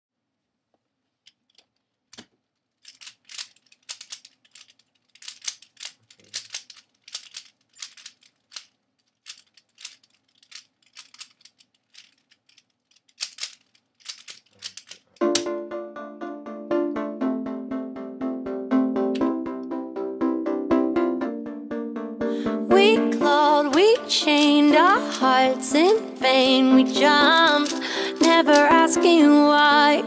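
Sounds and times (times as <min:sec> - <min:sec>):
puzzle cube plastic clicks: 0:01.2 - 0:15.5, 0:23.7 - 0:25.9, 0:27.2 - 0:28.9.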